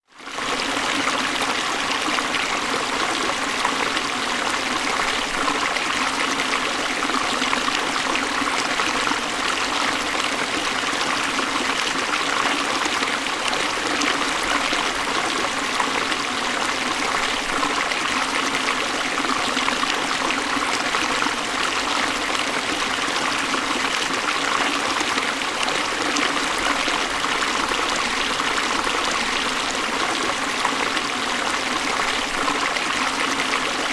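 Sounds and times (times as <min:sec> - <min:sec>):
creek water running: 0:00.1 - 0:33.9.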